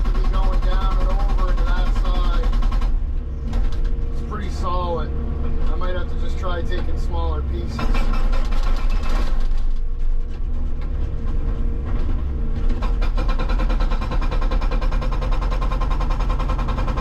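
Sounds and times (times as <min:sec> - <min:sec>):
hydraulic breaker hammering rock: 0:00.0 - 0:03.9, 0:07.6 - 0:09.8, 0:12.6 - 0:17.0
excavator engine running: 0:00.0 - 0:17.0.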